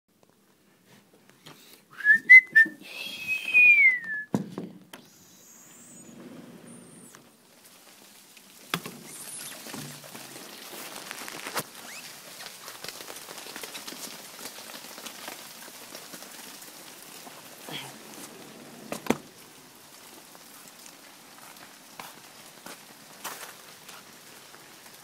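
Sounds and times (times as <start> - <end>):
ice falling crackling patter: 5.0 - 25.0
falling squeal: 5.1 - 7.2.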